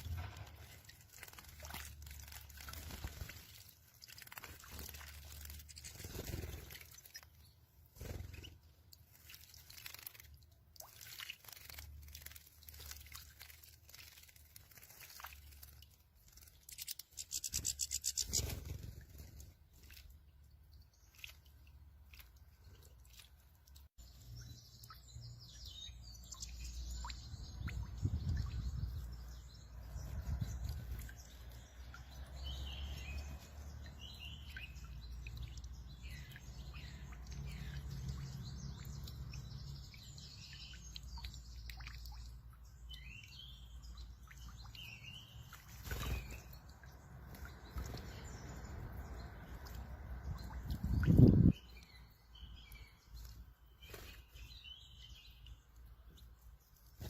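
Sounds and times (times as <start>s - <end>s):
small birds chirping: 0.0s - 57.0s.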